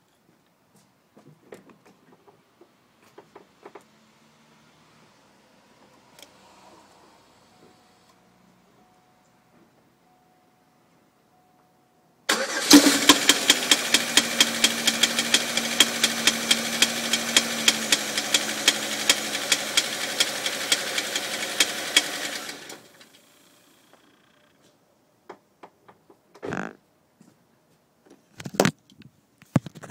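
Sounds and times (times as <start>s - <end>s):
car engine with knocking: 12.7s - 23.2s.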